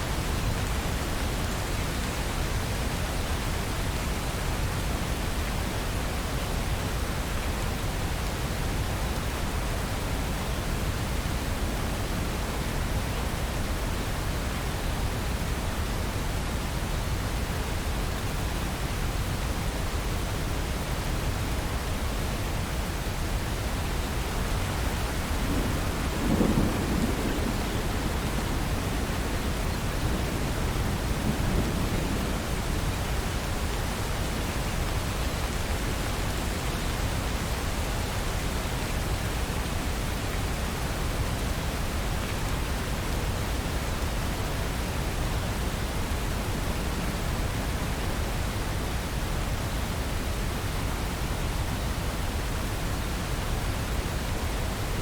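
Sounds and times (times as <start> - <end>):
rain falling: 0.0 - 55.0
thunder rumble: 23.6 - 36.2.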